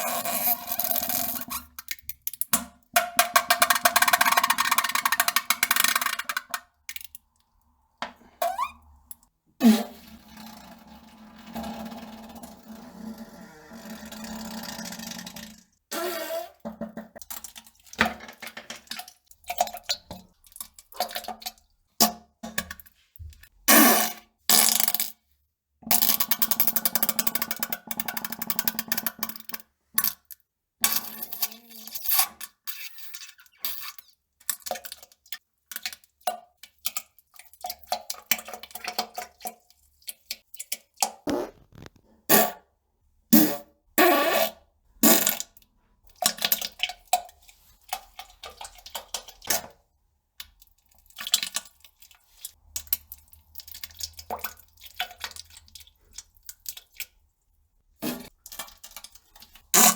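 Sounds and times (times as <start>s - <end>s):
farting: 41.3s - 42.5s.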